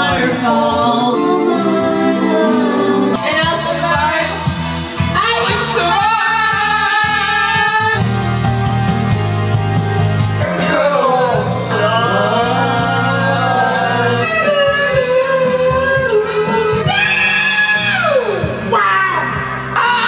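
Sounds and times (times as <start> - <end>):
karaoke backing track with guitar: 0.0 - 20.0.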